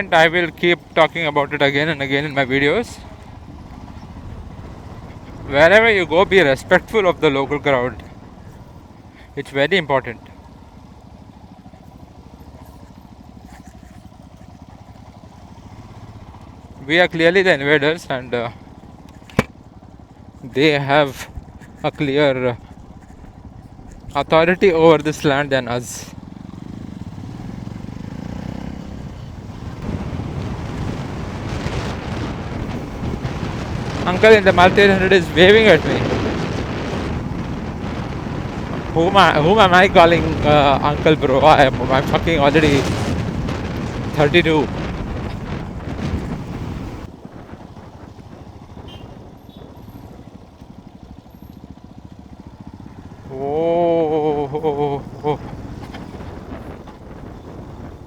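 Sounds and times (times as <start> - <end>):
motorcycle engine running: 0.0 - 58.0
wind and road rush: 0.0 - 58.0
wind on microphone: 29.8 - 49.4.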